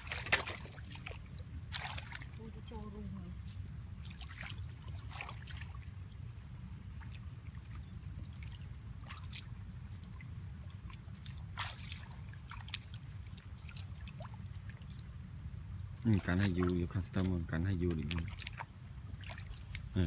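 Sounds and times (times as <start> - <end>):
short splashes and squelches: 0.0 - 20.0
water sloshing and dripping: 0.0 - 20.0.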